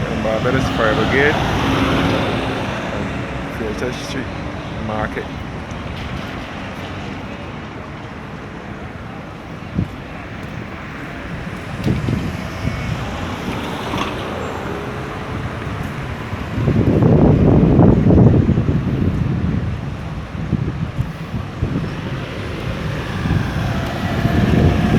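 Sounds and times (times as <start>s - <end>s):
vehicle passing with low rumble: 0.0s - 5.2s, 11.0s - 24.9s
street traffic: 0.0s - 24.9s
wind on microphone: 0.0s - 24.9s.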